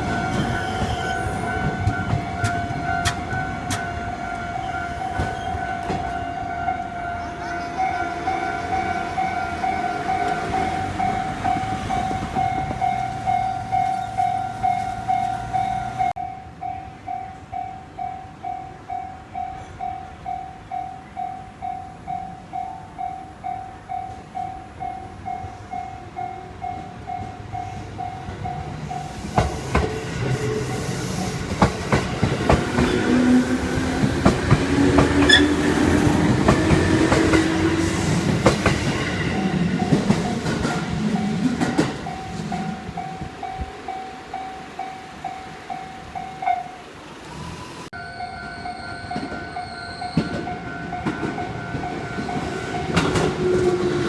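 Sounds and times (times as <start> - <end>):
train wheels clacking on rail joints: 0.0 - 3.9, 10.1 - 15.8, 28.2 - 43.7, 50.1 - 54.0
level crossing bell clanging: 47.9 - 53.8.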